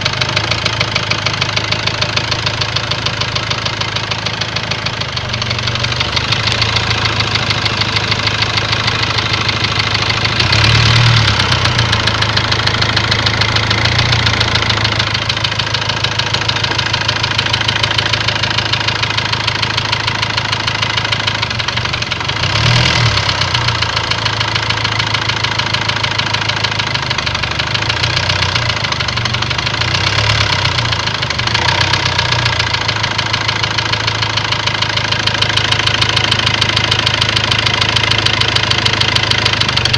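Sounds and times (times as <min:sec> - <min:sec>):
engine idling with knock: 0:00.0 - 0:39.9
engine revving: 0:05.4 - 0:16.5, 0:20.2 - 0:26.7, 0:27.6 - 0:39.9.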